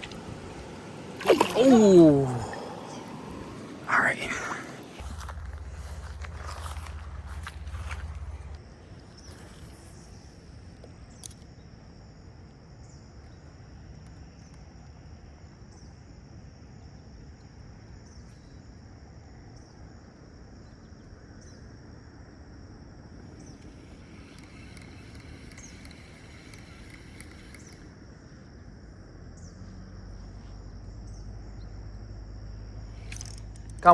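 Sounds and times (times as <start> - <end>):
low outdoor rumble: 0.0 - 10.2
insects chirring: 0.0 - 33.9.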